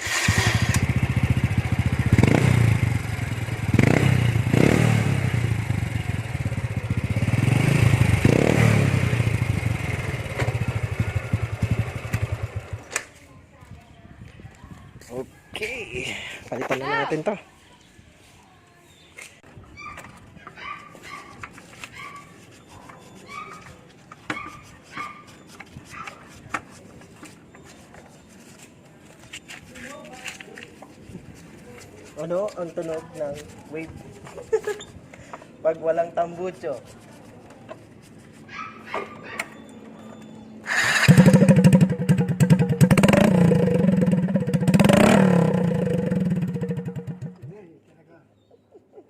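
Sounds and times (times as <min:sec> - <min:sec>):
motorcycle engine loud popping: 0:00.0 - 0:02.9, 0:40.7 - 0:47.5
dog whimpering: 0:38.6 - 0:40.7.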